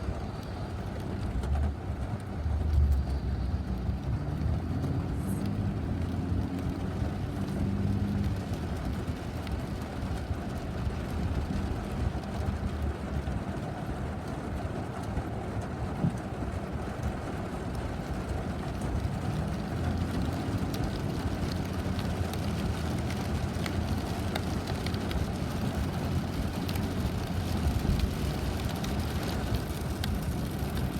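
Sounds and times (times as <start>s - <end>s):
light ticks of rain: 0.0s - 30.9s
road traffic rumble: 0.0s - 30.9s.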